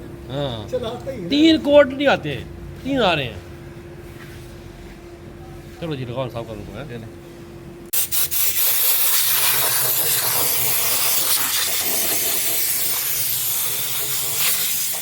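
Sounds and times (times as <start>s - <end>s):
pressurised spray hissing: 8.0s - 15.0s.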